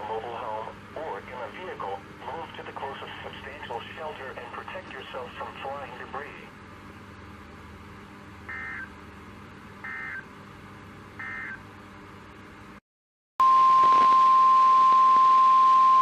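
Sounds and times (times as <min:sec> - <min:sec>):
steady warning alarm tone: 0:08.5 - 0:08.9, 0:09.8 - 0:10.3, 0:11.2 - 0:11.6.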